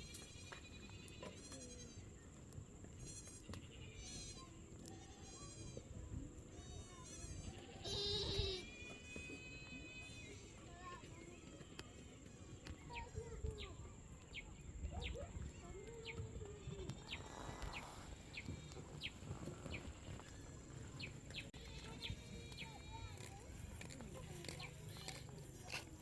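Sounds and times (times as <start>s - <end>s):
birds chirping: 6.8s - 25.4s.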